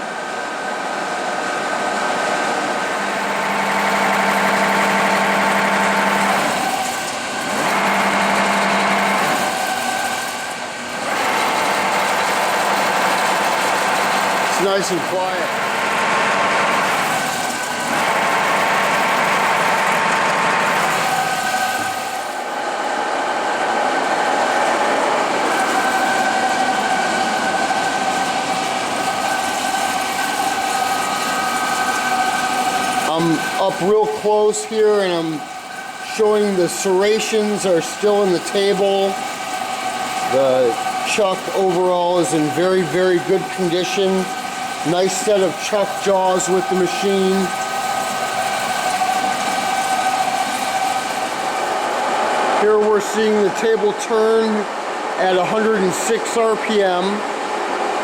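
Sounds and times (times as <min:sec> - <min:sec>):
lathe machine hum: 0:00.0 - 0:58.0
whining drive tones: 0:01.4 - 0:58.0.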